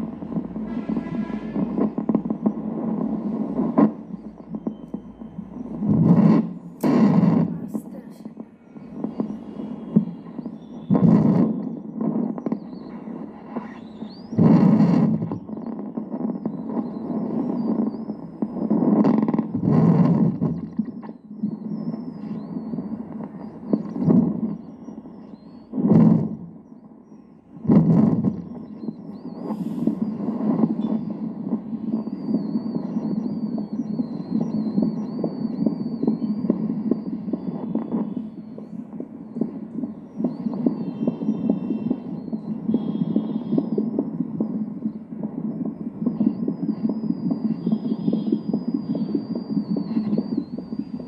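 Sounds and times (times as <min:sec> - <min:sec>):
faint wavering whistle: 0:00.0 - 0:07.8, 0:08.6 - 0:51.0
doppler probe rough noise: 0:00.0 - 0:26.7
fetal heartbeat whooshing pulse: 0:00.0 - 0:51.0
steady hiss: 0:00.0 - 0:51.0.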